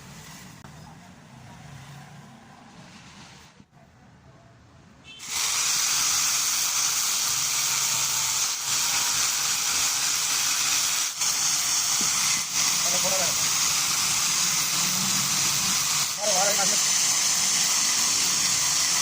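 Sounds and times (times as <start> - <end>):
loud steady hiss: 5.0 - 19.0.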